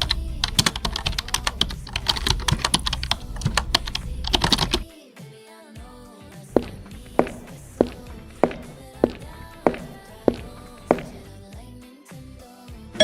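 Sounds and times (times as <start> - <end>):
faint steady tones: 0.0 - 4.9
fast typing on keyboard: 0.0 - 4.9.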